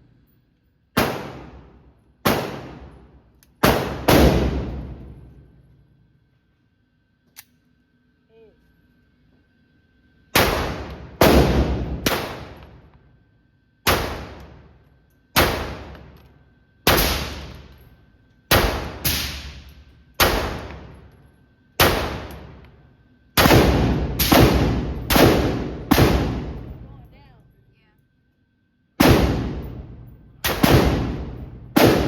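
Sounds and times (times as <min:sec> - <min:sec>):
pistol shots with echo: 0:01.0 - 0:05.2, 0:10.4 - 0:12.7, 0:13.9 - 0:14.6, 0:15.4 - 0:16.1, 0:16.9 - 0:17.7, 0:18.5 - 0:21.0, 0:21.8 - 0:22.6, 0:23.4 - 0:26.9, 0:29.0 - 0:32.0.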